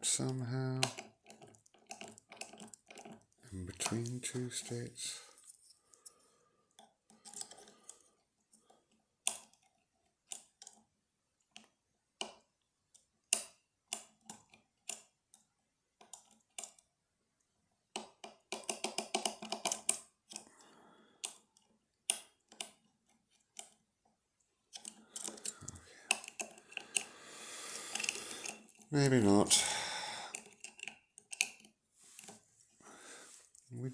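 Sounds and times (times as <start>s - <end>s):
metallic clicks of lock picking: 0.3s - 3.2s, 9.2s - 9.7s, 18.0s - 20.5s, 24.7s - 27.1s, 30.3s - 31.7s
rattling and scraping in lock: 0.9s - 4.8s, 30.3s - 32.4s.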